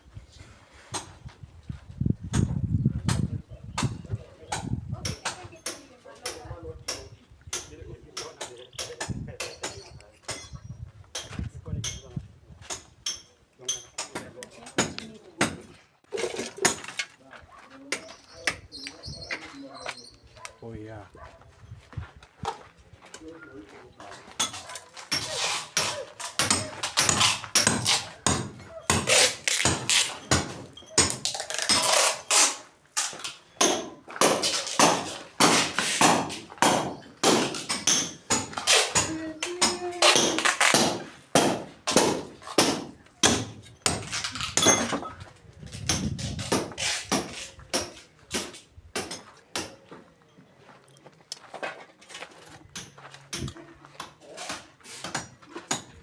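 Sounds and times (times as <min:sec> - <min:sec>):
hand tool striking hard: 0:24.3 - 0:45.1, 0:45.8 - 0:49.8.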